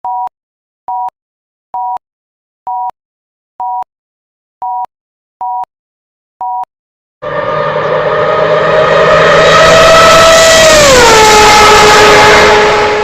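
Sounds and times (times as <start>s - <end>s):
loud steady sound: 7.2s - 13.0s.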